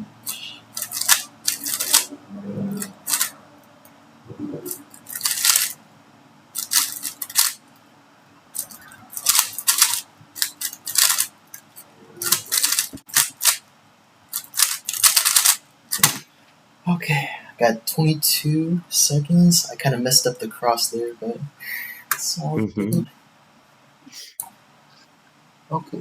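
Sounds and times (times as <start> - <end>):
puzzle cube plastic clacks: 0.3 - 2.1, 2.8 - 3.3, 4.7 - 5.8, 6.6 - 7.6, 8.6 - 11.6, 12.2 - 13.6, 14.3 - 16.1.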